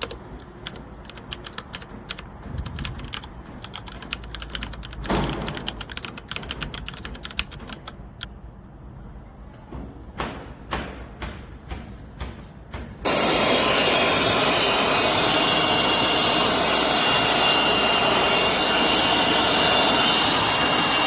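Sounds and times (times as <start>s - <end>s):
sharp clicks and taps: 0.0s - 8.4s.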